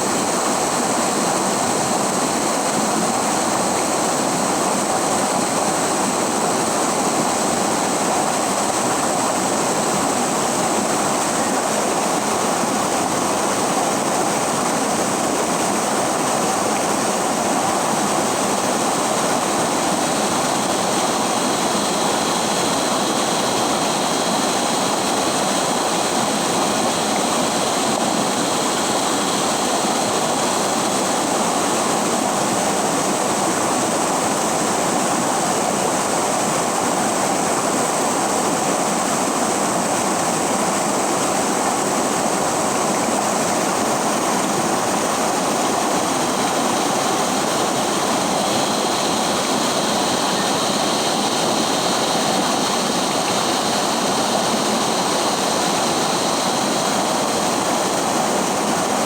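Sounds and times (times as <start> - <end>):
river water rushing: 38.0 - 59.0.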